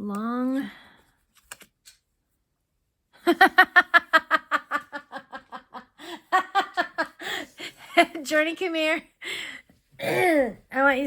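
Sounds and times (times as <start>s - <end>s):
woman laughing: 3.2s - 8.2s.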